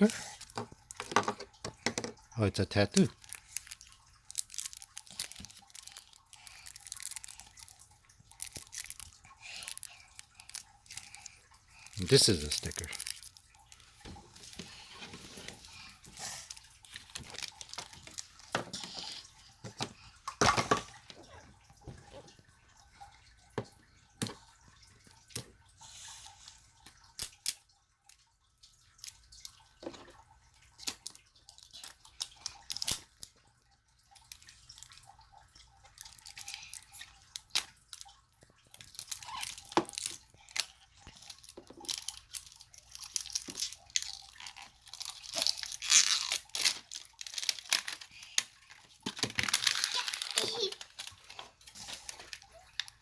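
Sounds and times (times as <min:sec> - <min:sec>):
packaging crinkling and rustling: 0:02.7 - 0:22.4, 0:38.8 - 0:53.0.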